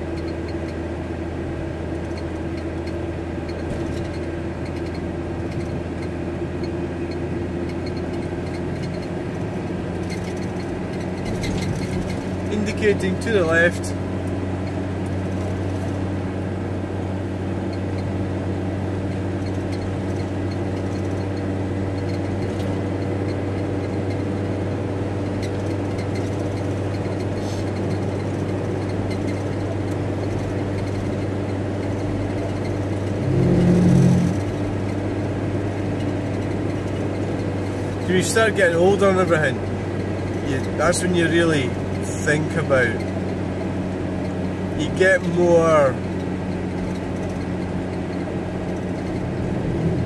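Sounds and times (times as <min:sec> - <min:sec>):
van engine and road drone: 0:00.0 - 0:50.0
loud low rumble: 0:33.1 - 0:34.9.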